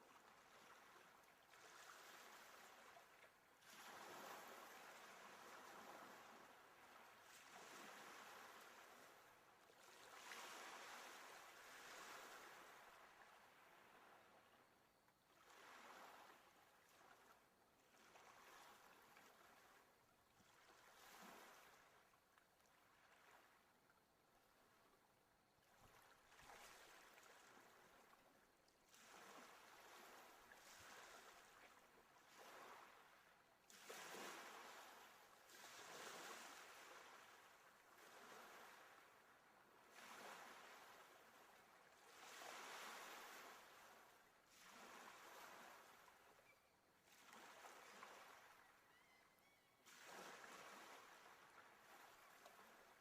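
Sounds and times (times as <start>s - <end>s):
faint sea surf: 25.8s - 53.0s.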